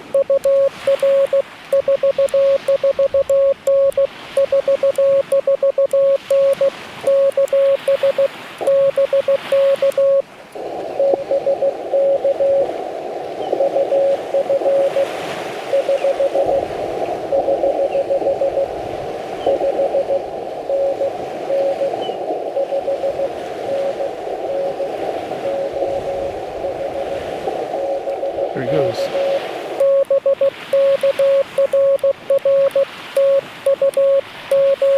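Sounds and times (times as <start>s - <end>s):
loud morse code tone: 0.0s - 10.2s, 11.0s - 12.7s, 13.5s - 16.7s, 17.3s - 18.8s, 19.4s - 26.0s, 26.6s - 27.1s, 27.8s - 34.9s
weaker morse code: 0.0s - 10.2s, 10.9s - 12.8s, 13.5s - 18.8s, 19.4s - 34.9s
radio band hiss: 7.4s - 34.9s.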